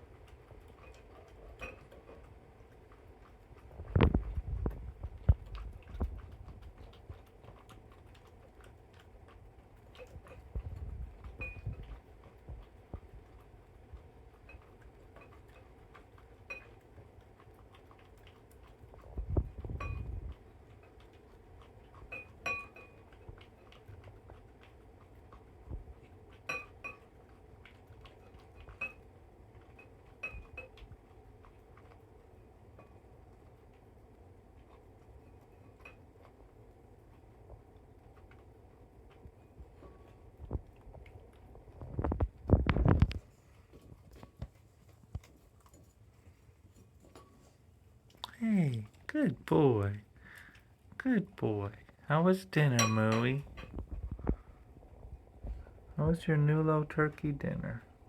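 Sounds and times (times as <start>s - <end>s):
dog chewing wet food: 0.0s - 58.0s
sharp clinks on bowl: 52.8s - 53.7s.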